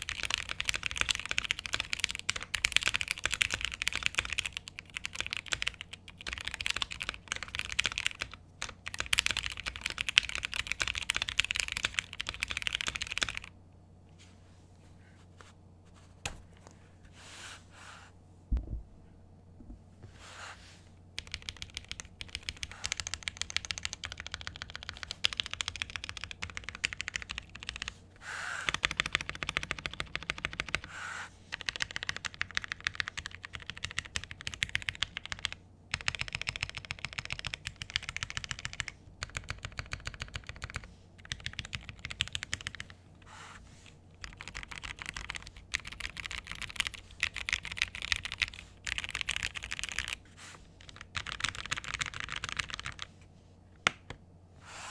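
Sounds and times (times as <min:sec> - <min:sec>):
mechanical keyboard typing: 0:00.0 - 0:13.5, 0:21.2 - 0:27.9, 0:28.7 - 0:30.9, 0:31.5 - 0:42.9, 0:44.2 - 0:50.2, 0:50.8 - 0:53.1.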